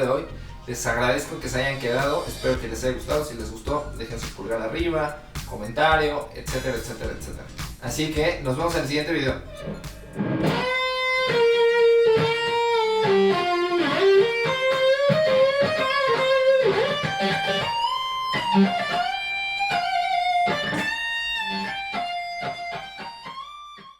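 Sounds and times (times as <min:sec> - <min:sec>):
electric guitar lead melody: 0:09.2 - 0:23.9.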